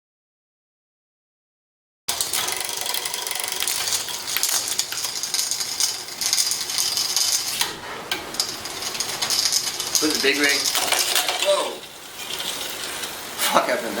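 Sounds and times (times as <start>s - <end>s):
bike drivetrain clicking: 2.1s - 13.2s.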